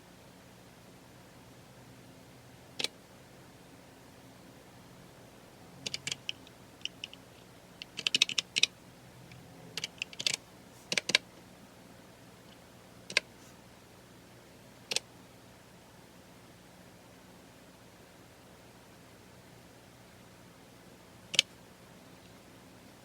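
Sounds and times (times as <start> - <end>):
computer keyboard typing: 5.8 - 7.2, 7.8 - 8.7, 9.8 - 11.3, 13.1 - 13.3.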